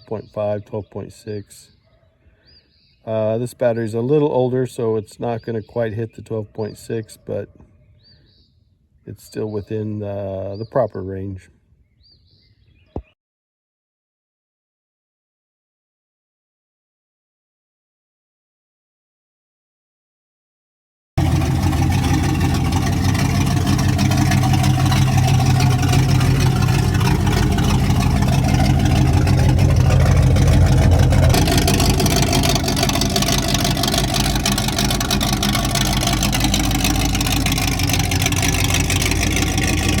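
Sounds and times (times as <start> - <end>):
car engine running loudly: 21.2 - 40.0.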